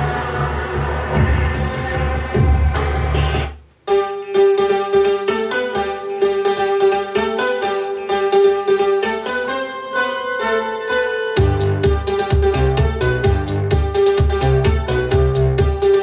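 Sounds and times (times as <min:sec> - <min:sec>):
music through speakers: 0:00.0 - 0:16.0.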